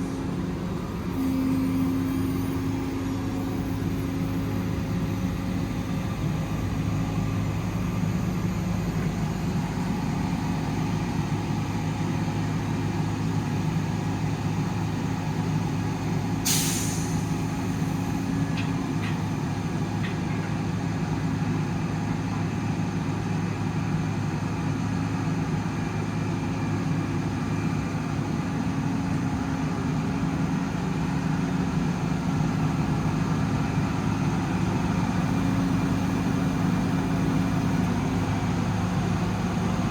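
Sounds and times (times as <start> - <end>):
truck diesel engine running: 0.0 - 39.9
air release hiss: 16.4 - 17.4.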